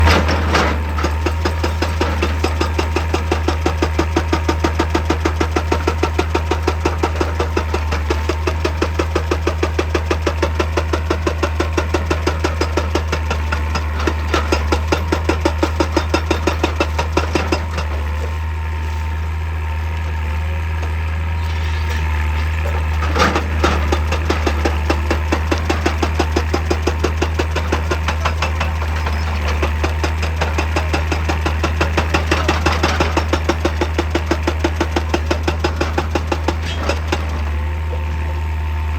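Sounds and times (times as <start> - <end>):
hydraulic breaker hammering rock: 0.0 - 18.4, 21.4 - 38.4
diesel engine drone: 0.0 - 38.9.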